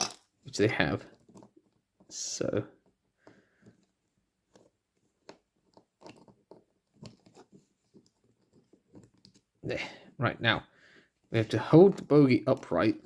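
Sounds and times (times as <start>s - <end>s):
small parts clicking and tapping: 4.5s - 9.5s.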